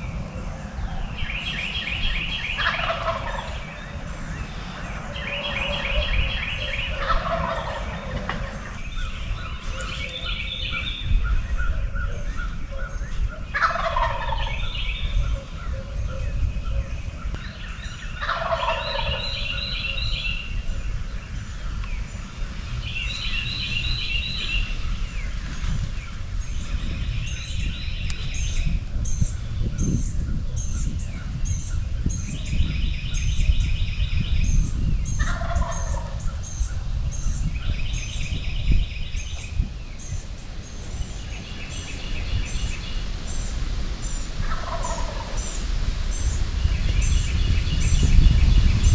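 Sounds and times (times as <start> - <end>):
birds chattering: 0.0 - 48.9
steady low rumble: 0.0 - 48.9
wild turkey gobbling: 1.2 - 10.9, 11.7 - 16.3, 17.4 - 21.2, 35.2 - 36.3, 44.4 - 45.6.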